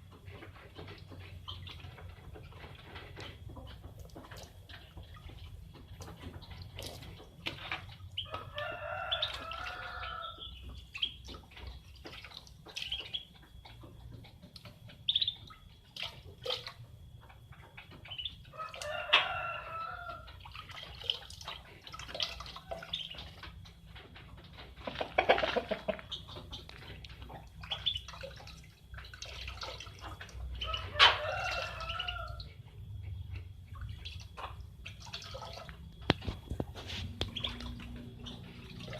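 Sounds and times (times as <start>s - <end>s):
water drips and splashes: 0.0s - 38.9s
chicken calling: 8.2s - 11.2s, 24.8s - 26.3s, 30.6s - 32.6s.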